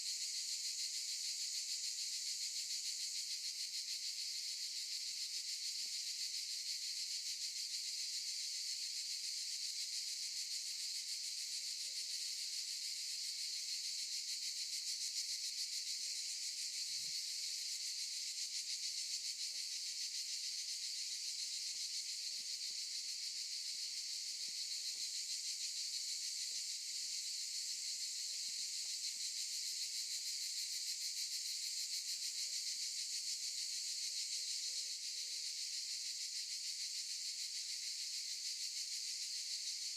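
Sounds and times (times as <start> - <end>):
cicadas buzzing: 15.0 - 32.0, 36.6 - 39.9.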